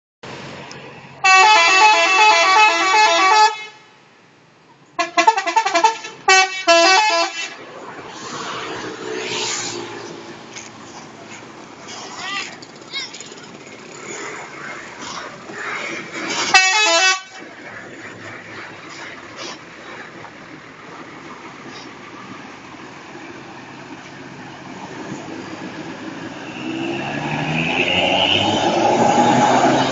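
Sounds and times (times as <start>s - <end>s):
bus engine running: 0.2s - 29.9s
multi-tone bus horn playing: 1.2s - 3.9s, 5.0s - 7.6s, 16.4s - 17.4s.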